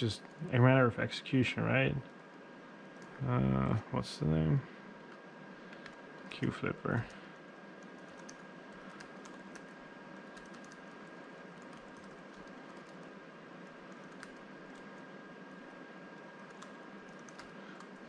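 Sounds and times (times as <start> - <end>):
steady low hiss: 0.0 - 18.0
keyboard typing: 7.8 - 13.1, 13.9 - 15.0, 16.4 - 18.0.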